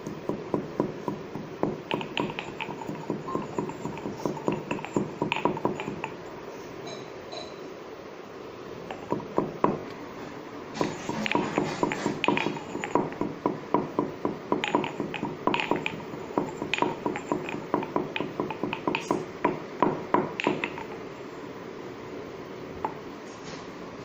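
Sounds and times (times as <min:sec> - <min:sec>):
pestle pounding in mortar: 0:00.0 - 0:06.2, 0:08.9 - 0:09.9, 0:10.8 - 0:20.9.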